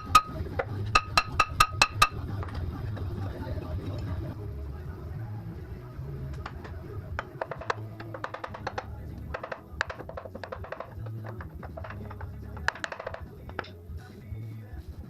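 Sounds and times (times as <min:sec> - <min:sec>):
background music: 0:00.0 - 0:15.0.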